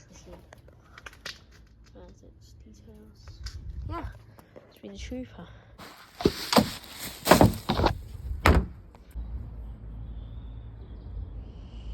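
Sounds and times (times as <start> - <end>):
rustling scraping noise: 5.8 - 8.2
knocks and thuds: 6.1 - 8.8.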